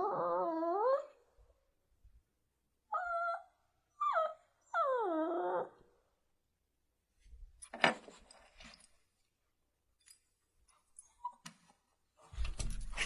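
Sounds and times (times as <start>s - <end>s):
dog whimpering: 0.0s - 1.2s, 2.9s - 6.0s.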